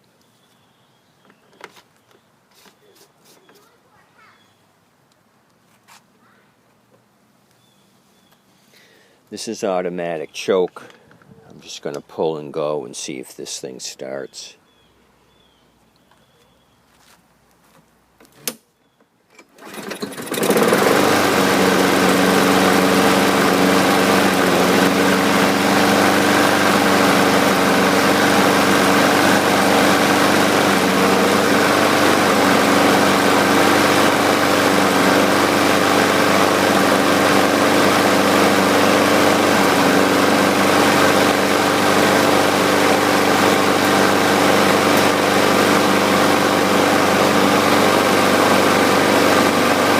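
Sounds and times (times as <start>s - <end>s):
lawn mower pull-start: 19.3s - 49.9s
lawn mower engine running: 19.4s - 49.9s.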